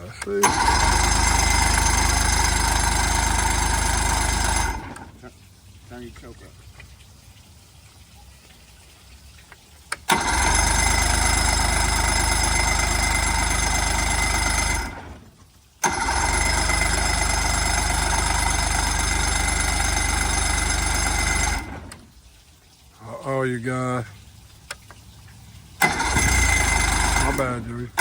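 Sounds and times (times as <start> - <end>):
electric starter cranking outboard motor: 0.0 - 5.3, 9.9 - 22.2, 24.6 - 28.0.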